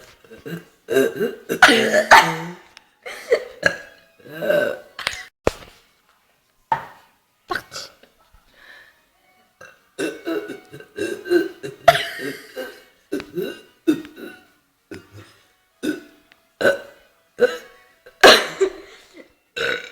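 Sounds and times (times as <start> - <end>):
girl burping: 0.4 - 2.7, 3.3 - 5.0, 7.5 - 8.0, 9.6 - 19.0, 19.6 - 19.9.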